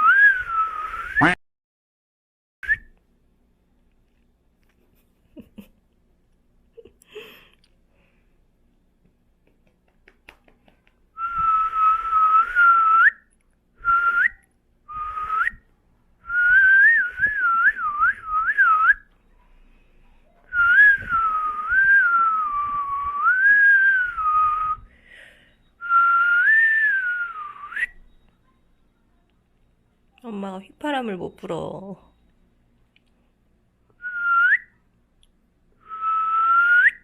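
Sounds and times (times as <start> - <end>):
person whistling: 0.0 - 1.4, 11.2 - 19.1, 20.5 - 28.2, 34.0 - 34.8, 35.8 - 37.0.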